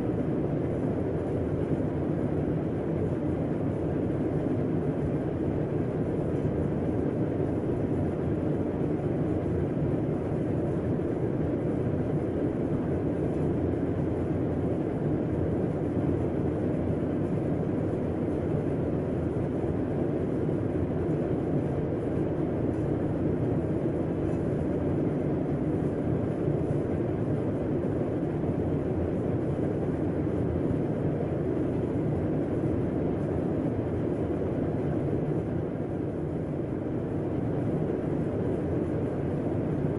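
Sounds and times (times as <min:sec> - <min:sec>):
air conditioner humming: 0:00.0 - 0:39.9.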